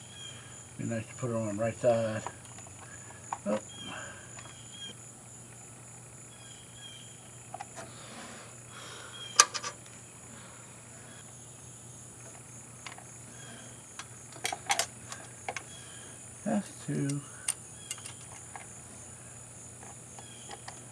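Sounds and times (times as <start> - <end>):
insects chirring: 0.0 - 20.9
parts clicking and tapping: 9.4 - 9.8, 13.9 - 15.7, 16.6 - 18.7.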